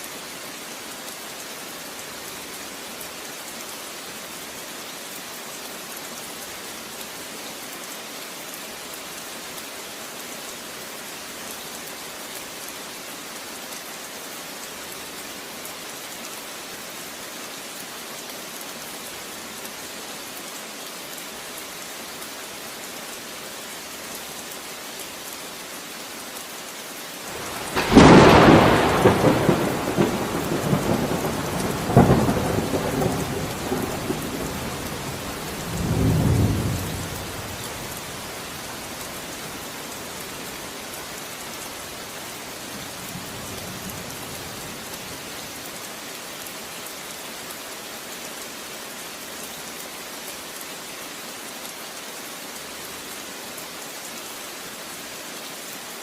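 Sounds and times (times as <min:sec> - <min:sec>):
steady rain falling: 0:00.0 - 0:56.0
thunder cracking and rumbling: 0:27.3 - 0:37.7.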